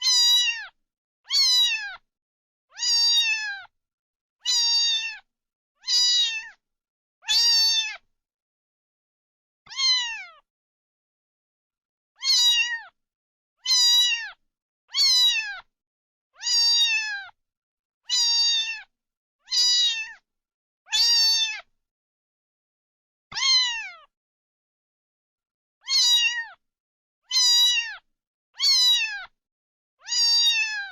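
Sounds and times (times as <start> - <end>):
kitten meowing: 0.0 - 2.0, 2.7 - 3.7, 4.4 - 6.6, 7.2 - 8.0, 9.7 - 10.4, 12.2 - 13.0, 13.6 - 15.7, 16.4 - 17.4, 18.1 - 18.9, 19.5 - 20.2, 20.9 - 21.7, 23.3 - 24.1, 25.8 - 26.6, 27.3 - 28.0, 28.6 - 29.3, 30.0 - 30.9.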